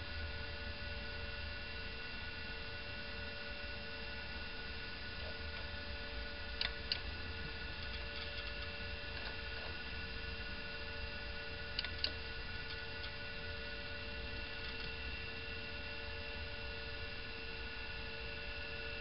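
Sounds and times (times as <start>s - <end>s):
electrical hum with high whine: 0.0s - 19.0s.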